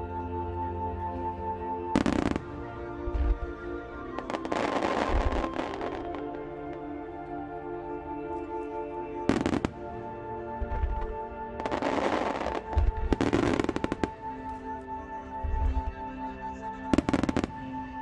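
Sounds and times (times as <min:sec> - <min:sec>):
music with held tones: 0:00.0 - 0:18.0
fireworks crackling: 0:04.2 - 0:06.4, 0:10.7 - 0:14.3.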